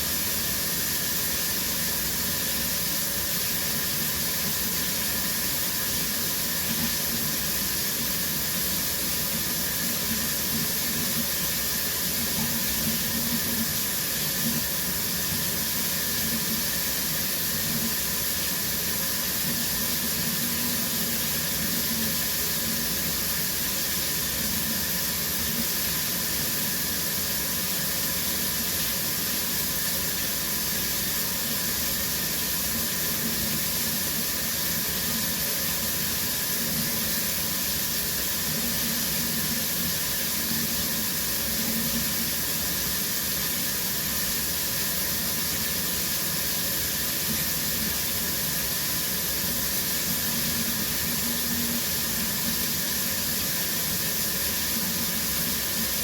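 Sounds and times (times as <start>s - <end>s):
shower water spraying: 0.0s - 56.0s.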